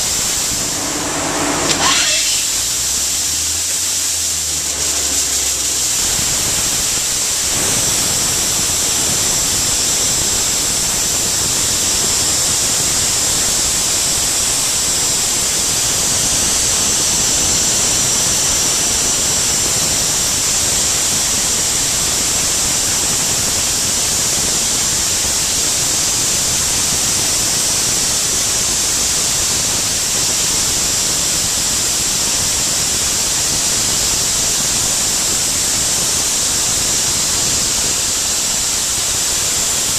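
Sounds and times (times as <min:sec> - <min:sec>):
soda blaster nozzle hissing: 0:00.0 - 0:06.7.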